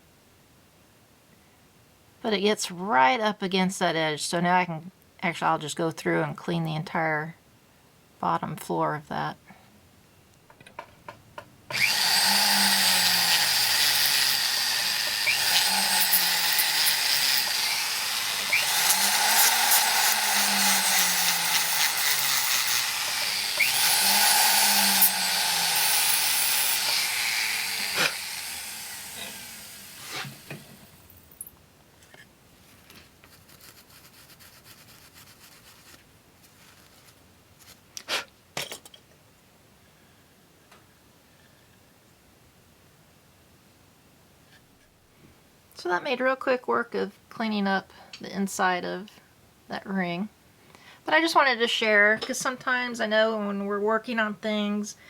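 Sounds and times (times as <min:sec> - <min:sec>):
rotary tool sanding metal: 0:11.7 - 0:30.6.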